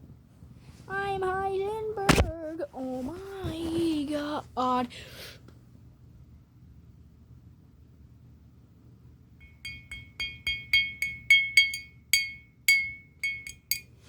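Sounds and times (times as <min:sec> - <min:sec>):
glass clinking: 0:09.4 - 0:13.9.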